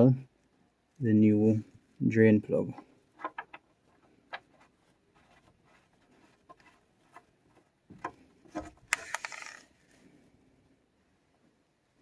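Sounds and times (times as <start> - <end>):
clicking and scraping: 2.6 - 10.0.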